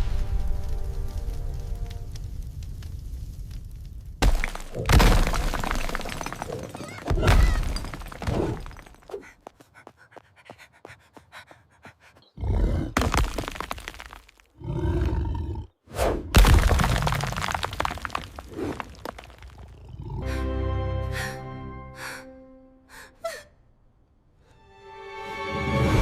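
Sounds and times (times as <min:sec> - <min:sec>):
crashes and impacts: 0:00.0 - 0:09.1, 0:16.2 - 0:19.8.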